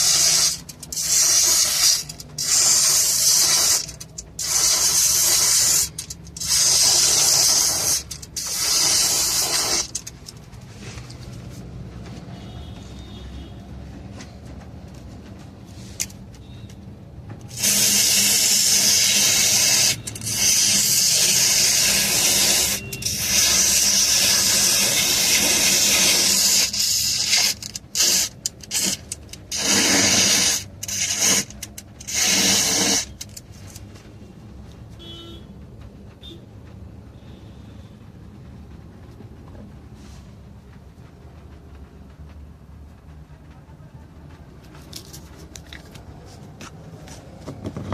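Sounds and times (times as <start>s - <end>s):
aerosol can spraying: 0.0s - 10.1s, 17.5s - 33.8s.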